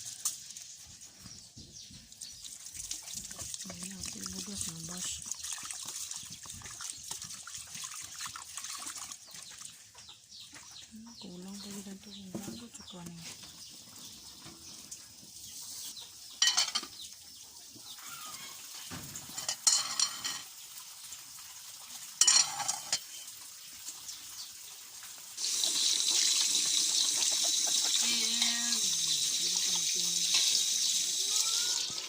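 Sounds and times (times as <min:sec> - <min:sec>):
water running from a tap: 0:02.1 - 0:09.8, 0:14.8 - 0:32.0
water splashes: 0:02.3 - 0:09.8.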